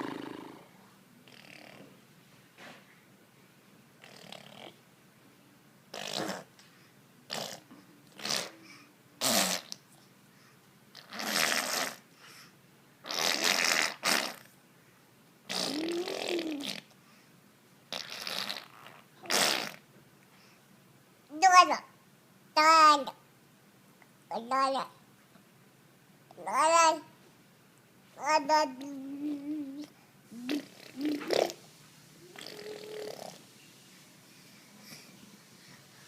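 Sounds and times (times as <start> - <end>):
child blowing raspberry noises: 0.0 - 0.7, 5.9 - 6.5, 7.3 - 8.6, 9.2 - 9.8, 11.0 - 12.1, 13.0 - 14.5, 15.5 - 16.9, 17.9 - 19.8, 28.5 - 31.6, 32.2 - 33.4.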